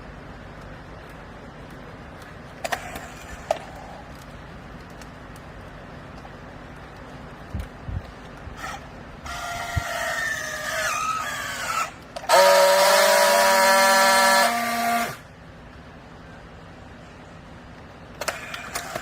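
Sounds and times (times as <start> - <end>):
loud horn-like tone: 12.3 - 15.2.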